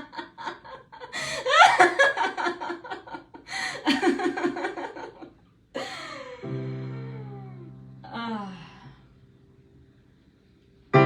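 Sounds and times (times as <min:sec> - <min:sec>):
person laughing: 0:00.0 - 0:06.5.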